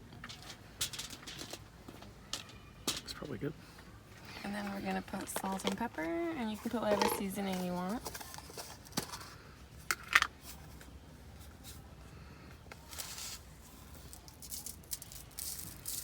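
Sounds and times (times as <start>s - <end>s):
salt and pepper shaker shaking: 14.1s - 16.0s.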